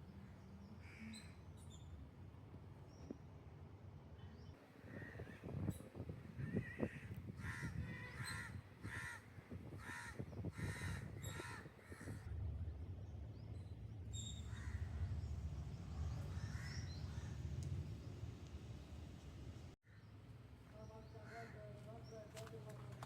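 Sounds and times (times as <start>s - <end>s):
bird cawing: 6.5s - 12.3s, 14.2s - 15.3s, 16.2s - 17.5s
low steady rumble: 10.8s - 19.8s.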